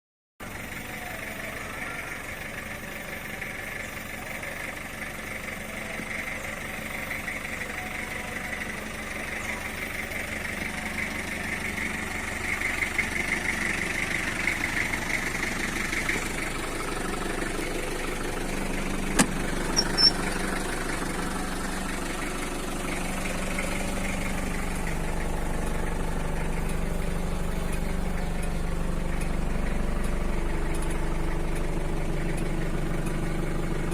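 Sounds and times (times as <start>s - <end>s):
minibus engine idling: 0.4s - 33.9s
sharp clicks: 19.2s - 20.2s.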